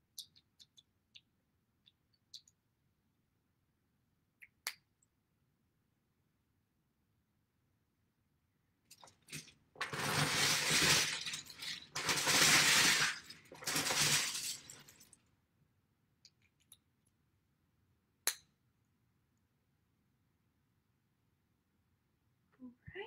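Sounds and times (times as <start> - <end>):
plastic bricks clattering: 8.9 - 15.2.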